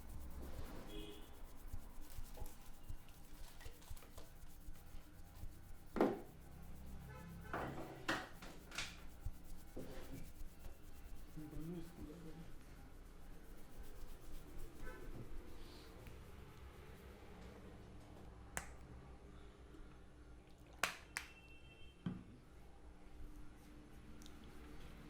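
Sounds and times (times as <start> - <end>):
hands rustling through hair: 0.0 - 7.0, 7.9 - 16.6.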